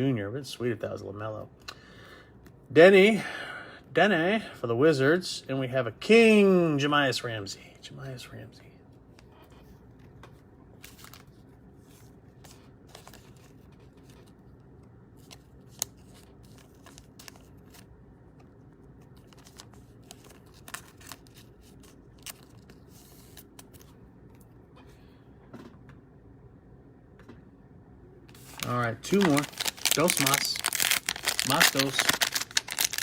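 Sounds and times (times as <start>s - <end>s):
faint low room hum: 0.0s - 33.0s
card packaging rustling and clicking: 10.2s - 11.4s, 12.4s - 14.4s, 15.2s - 24.4s, 28.3s - 33.0s.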